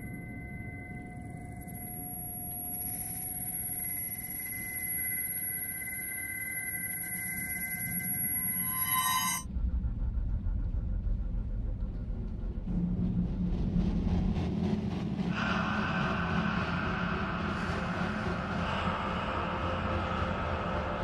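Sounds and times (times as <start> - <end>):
low rumbling suspense score: 9.4 - 21.0.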